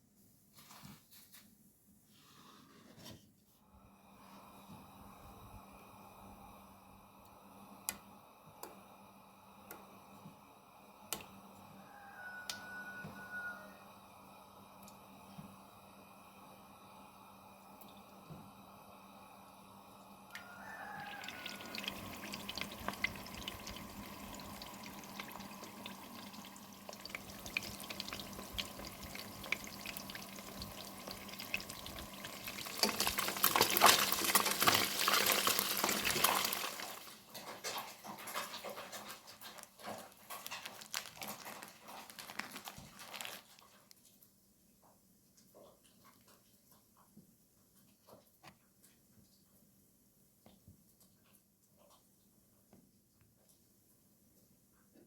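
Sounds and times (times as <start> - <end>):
water running from tap: 20.4 - 38.8.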